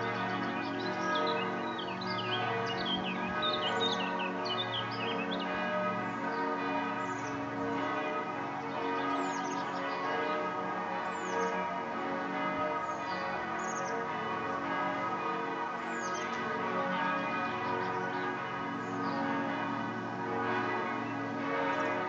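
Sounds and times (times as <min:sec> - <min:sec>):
church bells ringing: 0:00.0 - 0:22.0
birds chirping: 0:00.1 - 0:05.6.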